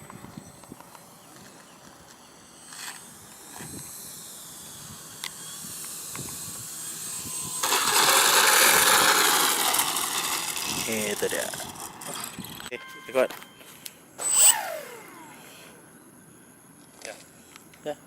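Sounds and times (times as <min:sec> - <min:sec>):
ducted fan rushing hiss: 0:00.0 - 0:12.7.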